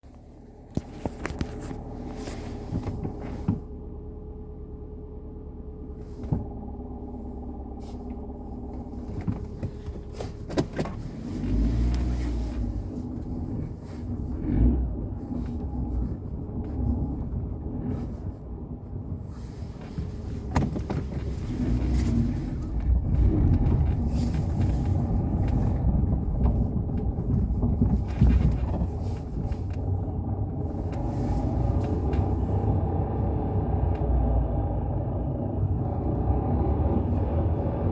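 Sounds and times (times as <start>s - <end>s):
low uneven rumble: 0.0s - 37.9s
car transmission humming: 0.1s - 37.9s.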